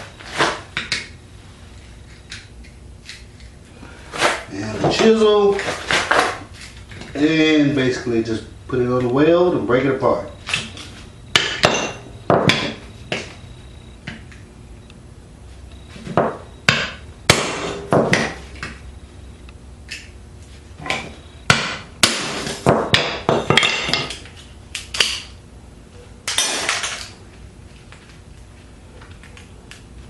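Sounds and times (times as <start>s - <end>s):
hammer striking chisel on metal: 11.3s - 12.8s, 16.7s - 18.4s, 20.9s - 24.2s.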